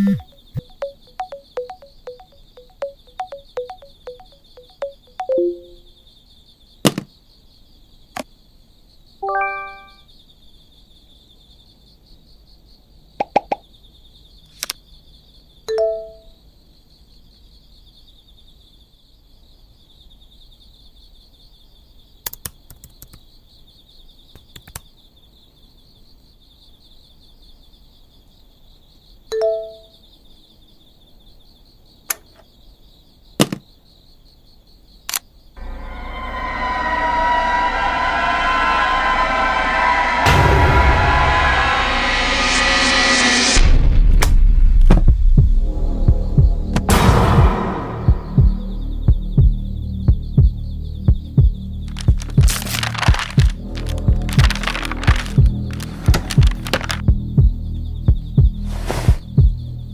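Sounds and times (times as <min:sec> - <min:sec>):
two-note plop-like blips: 0:00.0 - 0:05.9.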